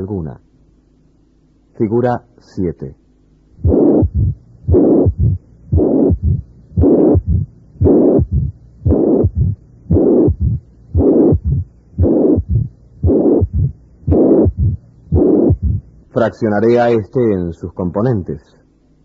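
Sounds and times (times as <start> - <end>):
heart murmur: 3.6 - 15.9
low heart thuds: 3.6 - 15.9.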